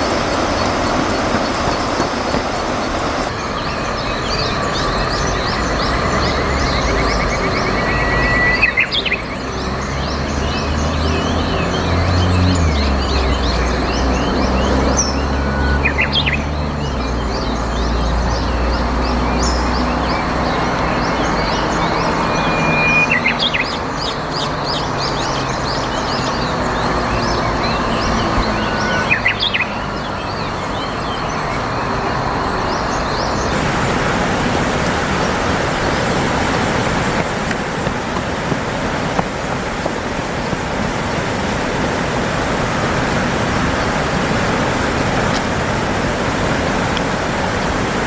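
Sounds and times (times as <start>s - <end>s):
low hum: 0.0s - 8.4s
steady rushing background: 0.0s - 10.1s
small birds chirping: 0.0s - 48.0s.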